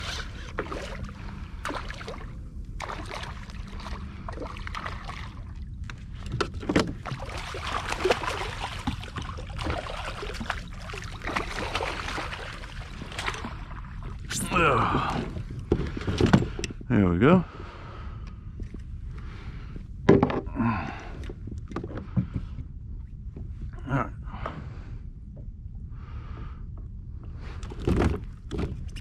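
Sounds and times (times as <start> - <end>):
water lapping against kayak: 0.0 - 16.7
steady low rumble: 0.0 - 29.0.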